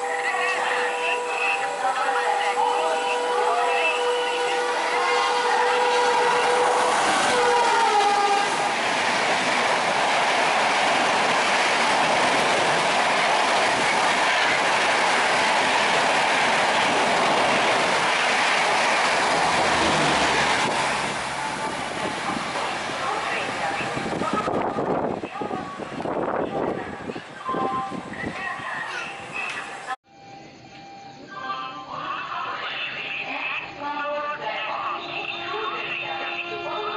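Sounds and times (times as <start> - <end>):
locomotive horn blast: 0.0 - 8.8
train rushing past: 0.0 - 30.6.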